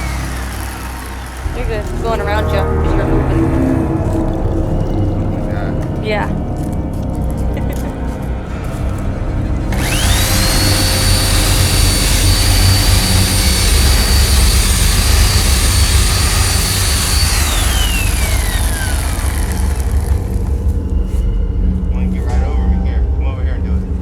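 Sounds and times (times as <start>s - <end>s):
low rumble: 1.4s - 24.0s
machine whine and hiss: 9.7s - 21.2s.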